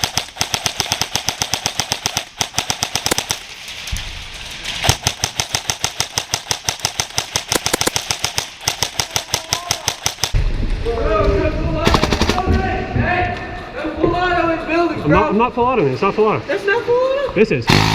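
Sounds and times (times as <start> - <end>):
airsoft rifle firing rapid shots: 0.0 - 3.4, 4.8 - 10.4, 11.8 - 12.5, 17.7 - 17.9.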